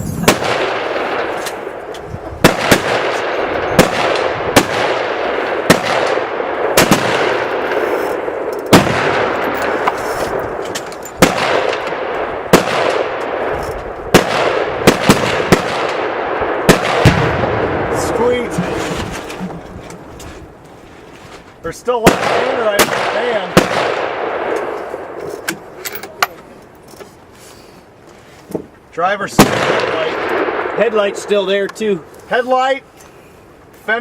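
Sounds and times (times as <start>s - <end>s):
gunshots: 0.1s - 10.6s, 11.2s - 19.4s, 22.0s - 25.2s, 29.3s - 31.4s.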